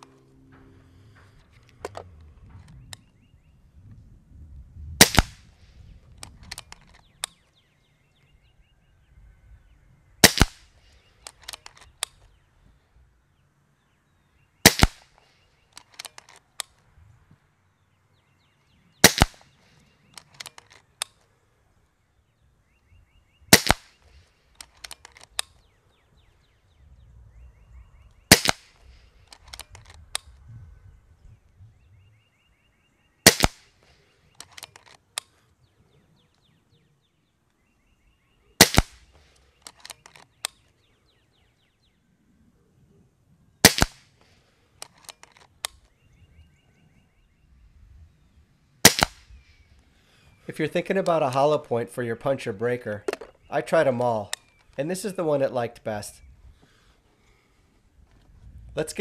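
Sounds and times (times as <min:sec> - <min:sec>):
air rifle shots: 0:05.0 - 0:05.6, 0:10.2 - 0:12.2, 0:14.6 - 0:16.4, 0:19.0 - 0:21.2, 0:23.5 - 0:25.6, 0:28.3 - 0:30.3, 0:33.2 - 0:35.3, 0:38.6 - 0:40.5, 0:43.6 - 0:44.2, 0:48.8 - 0:49.4.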